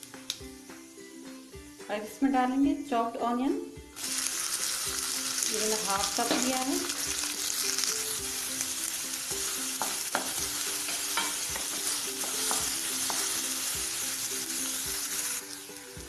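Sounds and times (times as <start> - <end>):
onion sizzling in hot oil: 4.0 - 16.0
spoon stirring and knocking pan: 6.0 - 6.7, 9.7 - 13.4.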